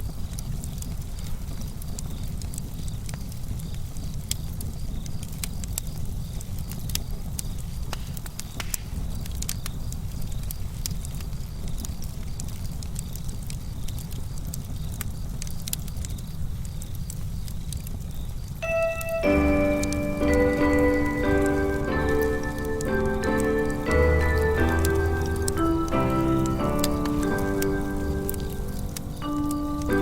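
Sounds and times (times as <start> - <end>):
campfire pops and snaps: 0.3 - 18.0.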